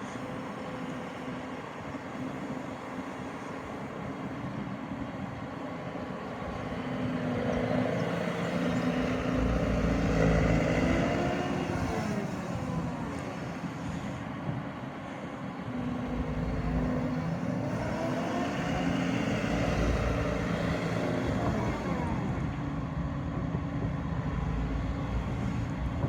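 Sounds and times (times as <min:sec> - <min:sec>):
excavator diesel engine running: 0:00.2 - 0:26.0.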